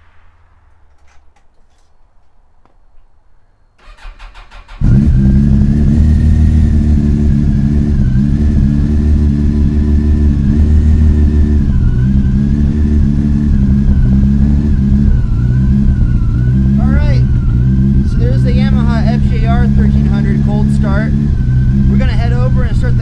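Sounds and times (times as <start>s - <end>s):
engine starter cranking: 3.8s - 5.2s
motorcycle engine idling: 3.9s - 23.0s.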